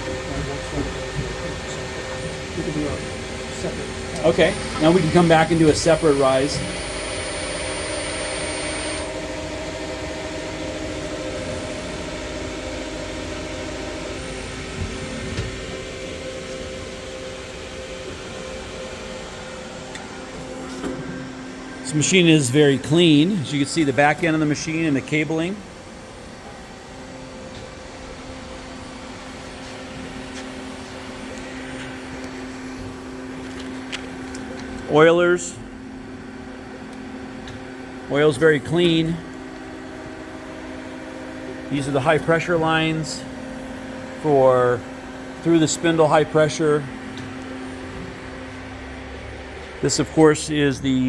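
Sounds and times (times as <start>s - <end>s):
lathe machine hum: 0.0s - 20.6s
lathe spindle whining hum: 0.0s - 49.9s.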